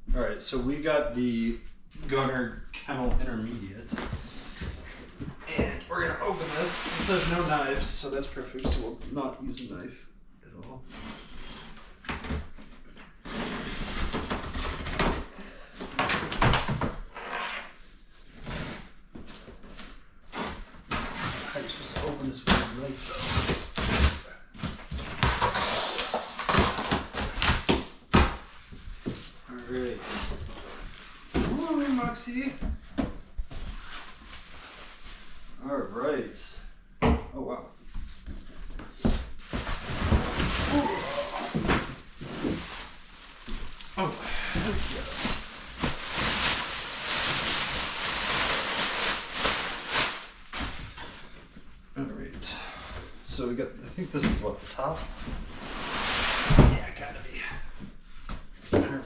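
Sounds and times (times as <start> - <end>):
packaging rustling and crinkling: 20.4 - 32.3, 38.6 - 51.4.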